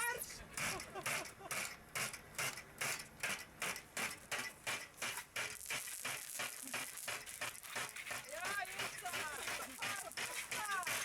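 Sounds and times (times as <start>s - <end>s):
water spray hissing: 4.7s - 11.0s
water spurting in pulses: 5.0s - 11.0s.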